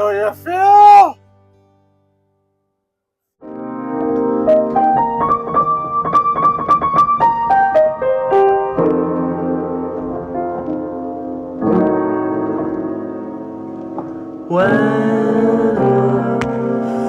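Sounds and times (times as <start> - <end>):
solo piano music: 3.4 - 17.0.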